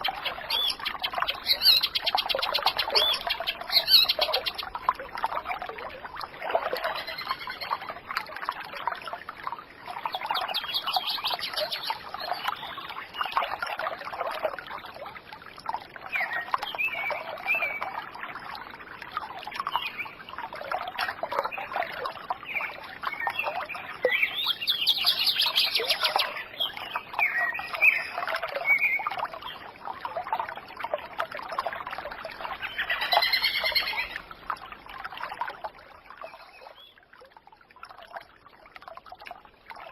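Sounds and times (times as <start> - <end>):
many birds chirping: 0.0 - 4.7, 6.8 - 7.8, 24.1 - 29.0, 32.6 - 34.2.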